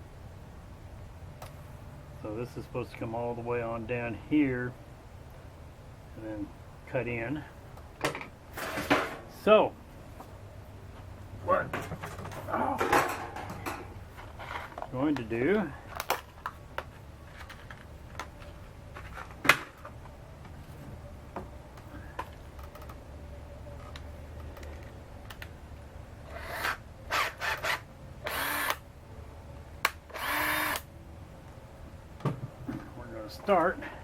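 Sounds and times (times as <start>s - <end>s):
power drill bursts: 26.3s - 28.8s, 30.1s - 30.9s.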